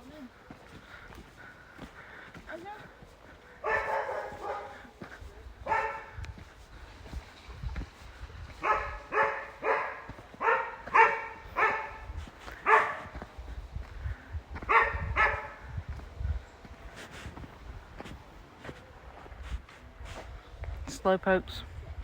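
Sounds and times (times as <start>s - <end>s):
dog barking: 3.6s - 4.9s, 5.6s - 6.2s, 8.6s - 13.2s, 14.7s - 15.6s.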